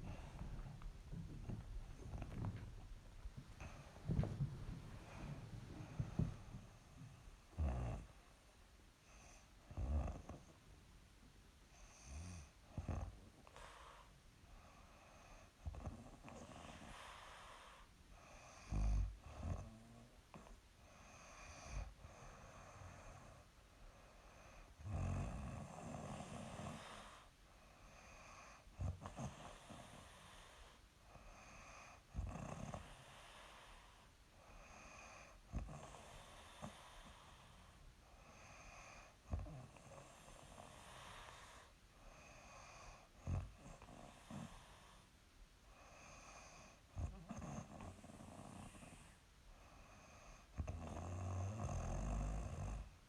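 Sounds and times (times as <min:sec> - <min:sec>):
soft breathing: 0:00.0 - 0:09.6, 0:32.7 - 0:50.6
woman snoring: 0:50.0 - 0:52.9.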